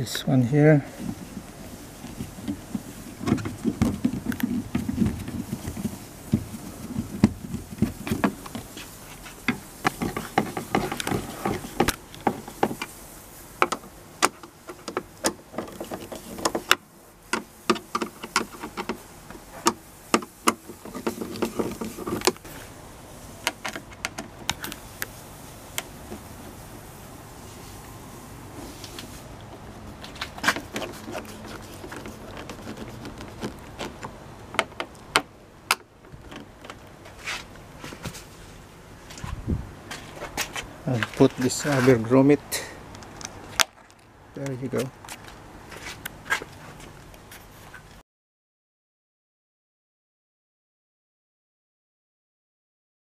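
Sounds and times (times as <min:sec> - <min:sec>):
tools clicking and tapping on plastic: 0:13.6 - 0:19.0.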